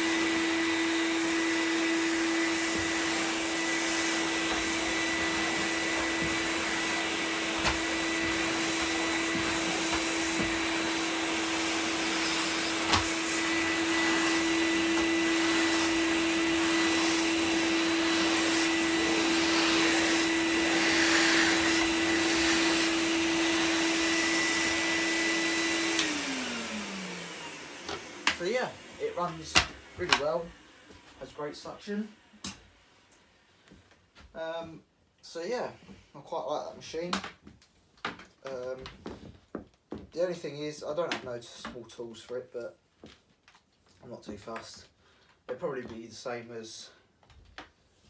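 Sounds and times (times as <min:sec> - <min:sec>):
vacuum cleaner running: 0:00.0 - 0:33.5.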